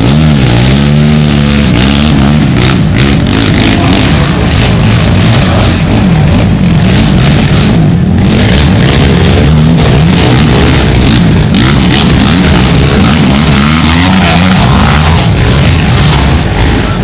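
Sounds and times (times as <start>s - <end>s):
racing quad engines revving: 0.0s - 17.0s.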